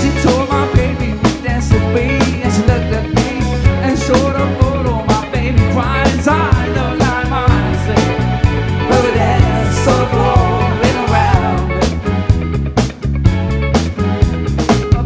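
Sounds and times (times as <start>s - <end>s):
drum kit steady beat: 0.0s - 15.0s
live rock band playing: 0.0s - 15.0s.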